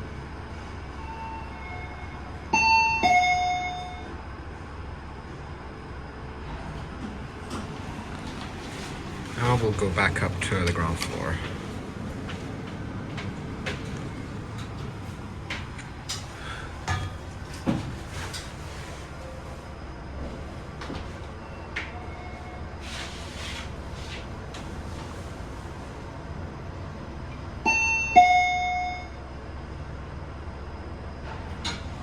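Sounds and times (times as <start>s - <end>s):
elevator hum: 0.0s - 32.0s
elevator two-note chime: 1.0s - 4.2s, 27.7s - 29.2s.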